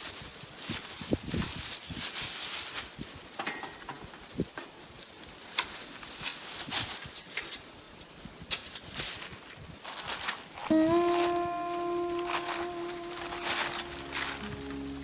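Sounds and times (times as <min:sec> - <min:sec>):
footsteps crunching dry leaves: 0:08.9 - 0:15.0.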